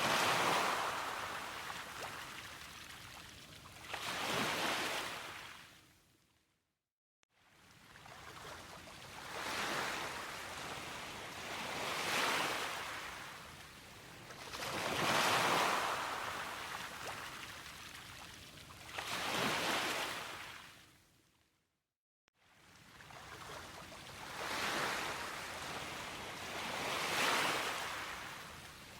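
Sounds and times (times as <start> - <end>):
sea waves washing in: 0.0 - 3.2, 14.5 - 17.7, 23.1 - 28.9.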